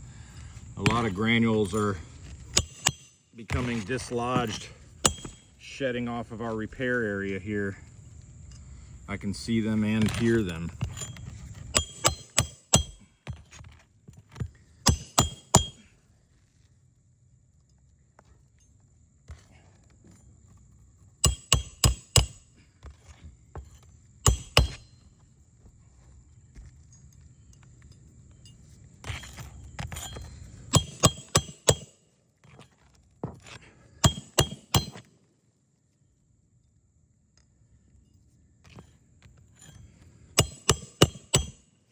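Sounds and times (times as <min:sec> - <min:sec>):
hammer striking roofing nails: 0:02.5 - 0:05.5, 0:11.7 - 0:13.6, 0:14.4 - 0:15.8, 0:21.2 - 0:22.5, 0:24.2 - 0:24.9, 0:30.7 - 0:32.0, 0:34.0 - 0:35.1, 0:40.4 - 0:41.6.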